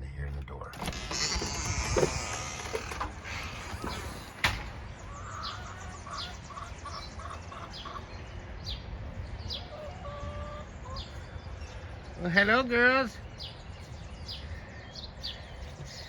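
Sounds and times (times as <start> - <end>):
birds chirping: 0.0 - 16.0
door banging shut: 0.8 - 5.0.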